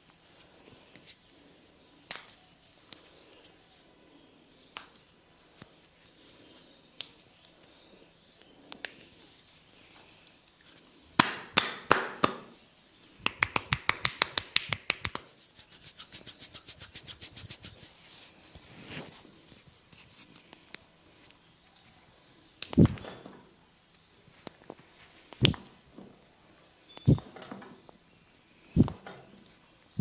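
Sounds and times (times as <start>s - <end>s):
hands slapping on head: 2.1s - 3.1s, 4.7s - 5.7s, 11.2s - 12.6s, 13.2s - 17.8s, 22.6s - 23.0s, 25.3s - 25.7s.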